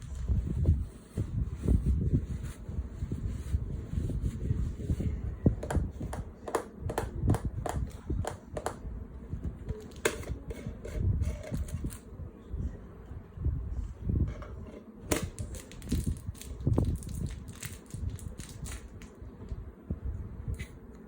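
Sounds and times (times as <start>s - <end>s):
low rustling handling noise: 0.0s - 6.4s.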